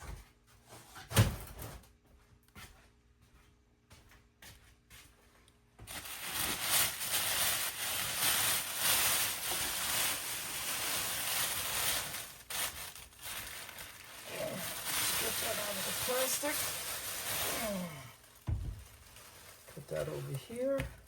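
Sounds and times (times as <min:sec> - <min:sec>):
plastic wrapping rustling and crinkling: 0:05.8 - 0:21.0.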